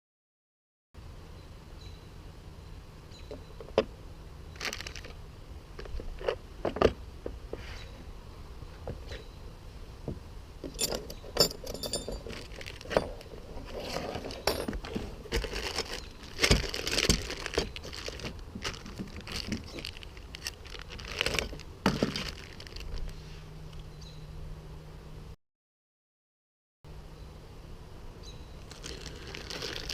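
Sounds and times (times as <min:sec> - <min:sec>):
metal wrenches clinking: 0:10.6 - 0:16.0.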